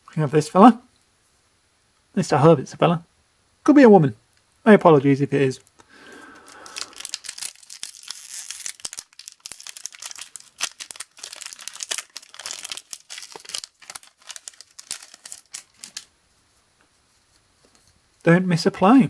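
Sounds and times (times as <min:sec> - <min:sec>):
foil wrapper tearing and crinkling: 0:06.3 - 0:16.1.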